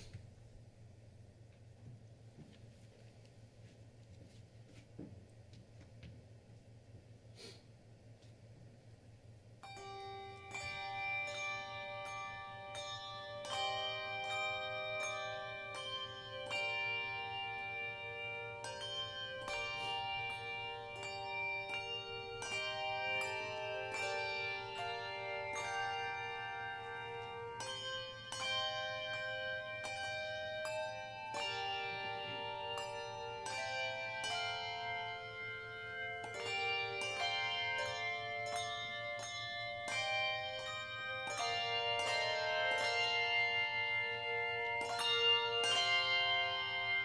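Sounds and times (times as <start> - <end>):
handbells ringing a slow melody: 9.6 - 47.0.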